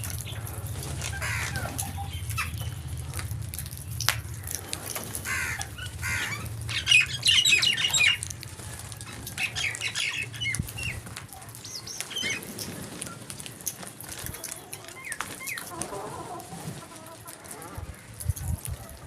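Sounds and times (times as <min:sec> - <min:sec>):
crows cawing: 0:00.1 - 0:03.2, 0:04.2 - 0:10.6.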